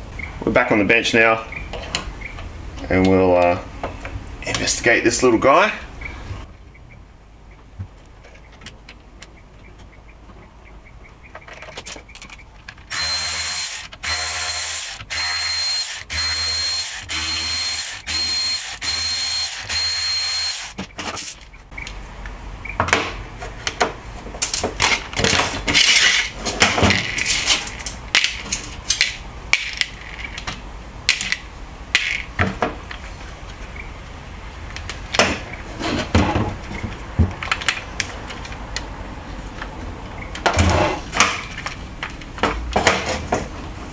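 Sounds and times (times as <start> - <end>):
power drill whining: 12.9 - 20.8.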